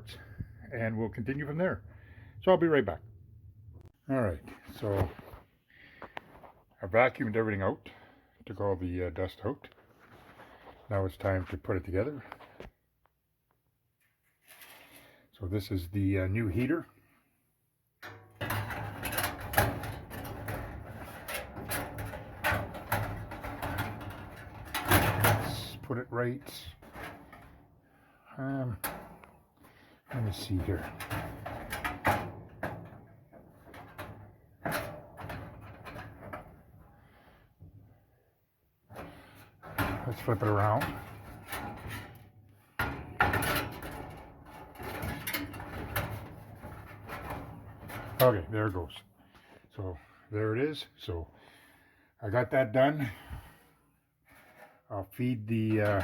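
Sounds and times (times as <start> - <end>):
knocks and scrapes on sheet metal: 18.0 - 27.7, 28.8 - 38.0, 38.9 - 48.6
clicks knocks and light scraping: 38.9 - 49.9.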